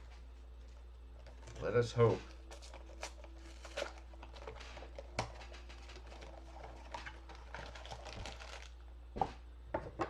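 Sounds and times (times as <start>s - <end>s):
steady low hum: 0.0s - 10.0s
packaging rustling: 1.2s - 8.8s.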